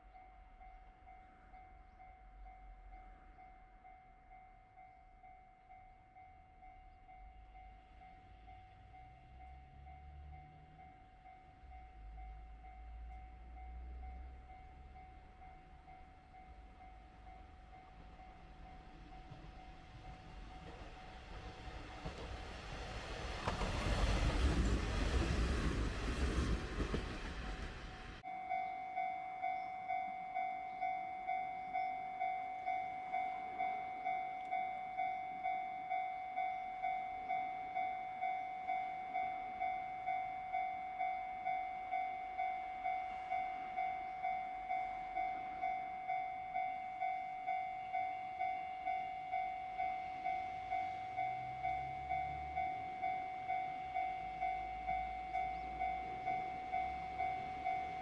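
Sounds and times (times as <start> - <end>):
train passing with rushing rumble: 5.7 - 58.0
level crossing bell ringing: 28.2 - 58.0.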